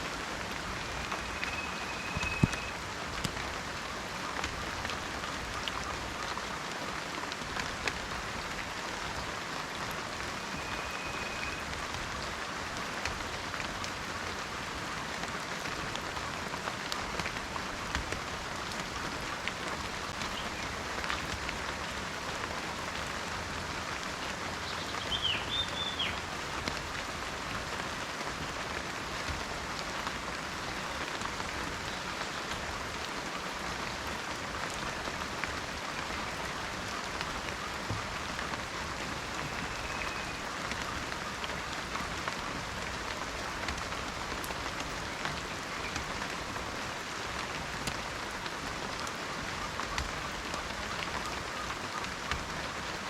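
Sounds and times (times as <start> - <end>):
rain pattering in forest: 0.0 - 53.0
bird chirp: 1.0 - 2.7, 24.6 - 26.2
faint short whistle: 1.2 - 2.8, 10.6 - 11.6.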